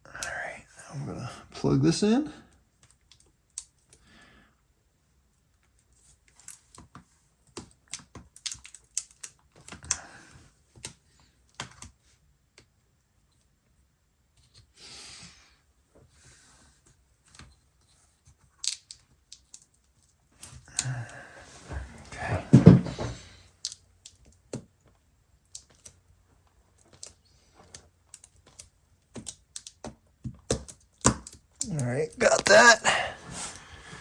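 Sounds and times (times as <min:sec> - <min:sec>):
small clicks and taps: 0:05.6 - 0:10.0, 0:23.6 - 0:26.0, 0:26.8 - 0:31.8.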